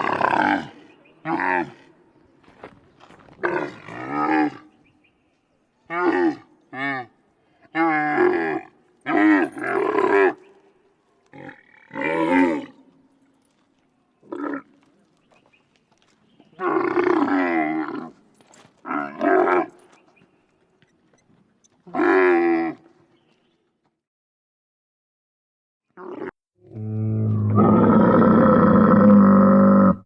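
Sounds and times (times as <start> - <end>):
camel calling: 20.8 - 22.9.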